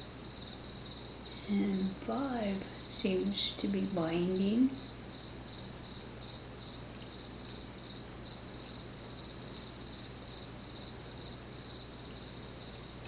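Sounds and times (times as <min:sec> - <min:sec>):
cricket chirping: 0:00.0 - 0:13.0.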